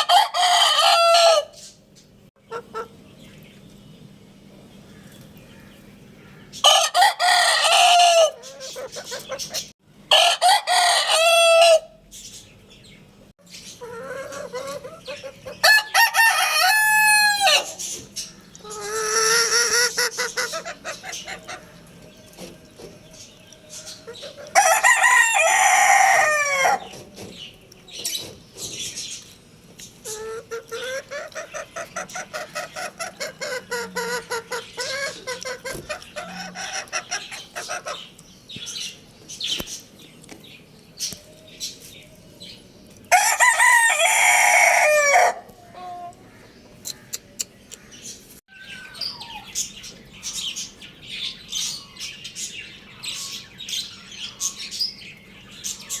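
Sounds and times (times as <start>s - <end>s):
rooster crowing: 0.0s - 1.6s, 6.6s - 8.5s, 10.1s - 12.0s, 15.6s - 17.8s, 24.5s - 26.9s, 43.1s - 46.1s
chickens clucking: 2.4s - 3.5s, 6.5s - 12.4s, 13.4s - 56.0s.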